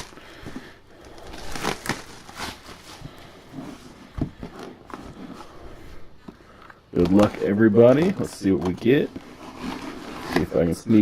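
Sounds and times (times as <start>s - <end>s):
cardboard packaging crinkling: 0.0s - 3.3s, 6.4s - 10.8s.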